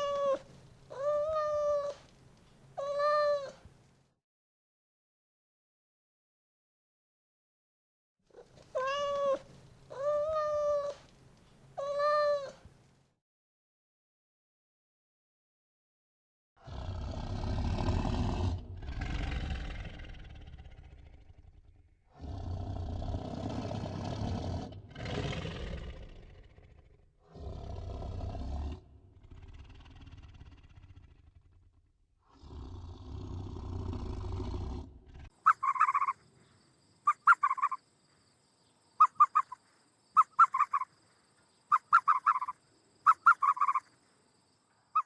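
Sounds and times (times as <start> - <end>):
cat meowing: 0.0 - 2.0, 8.7 - 10.9
big cat roaring: 16.6 - 35.4.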